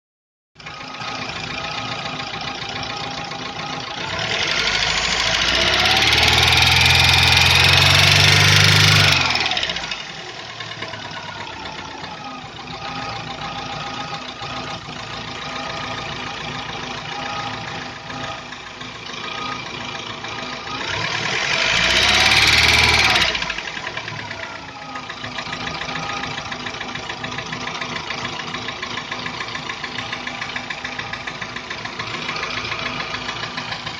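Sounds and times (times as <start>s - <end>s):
car engine idling and revving: 0.6s - 33.9s
rapid rhythmic engine tapping knock: 23.4s - 33.9s.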